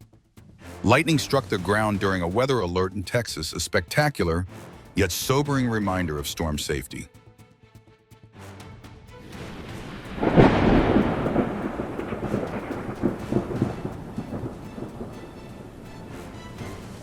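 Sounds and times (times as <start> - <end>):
rain: 9.2 - 17.0
thunder crack and rumble: 9.4 - 16.0.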